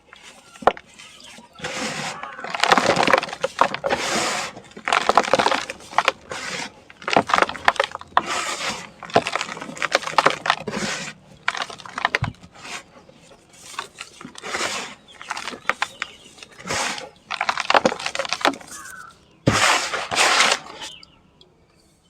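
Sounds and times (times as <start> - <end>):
sand and cement chunks crumbling: 0.0 - 21.0.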